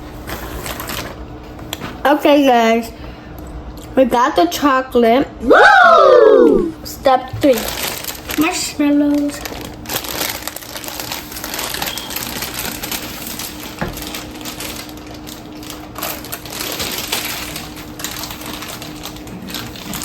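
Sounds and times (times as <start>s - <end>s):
plastic bag crinkling: 0.3s - 1.2s, 7.4s - 20.0s.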